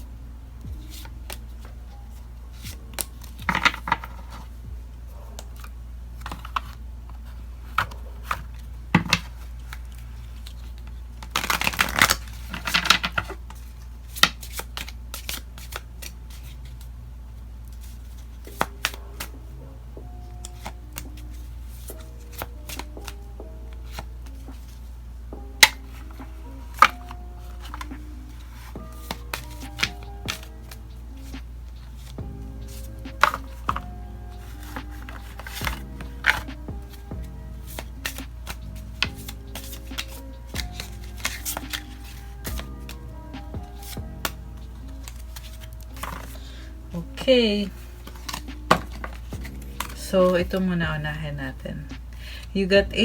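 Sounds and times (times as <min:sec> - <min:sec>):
cards being shuffled: 0:00.8 - 0:04.6, 0:05.2 - 0:16.9, 0:17.6 - 0:19.5, 0:20.4 - 0:25.0, 0:25.6 - 0:51.1
cards snapping and tapping: 0:11.2 - 0:13.4, 0:14.2 - 0:16.8, 0:18.4 - 0:19.4, 0:20.4 - 0:24.8, 0:25.6 - 0:46.6, 0:47.9 - 0:50.0.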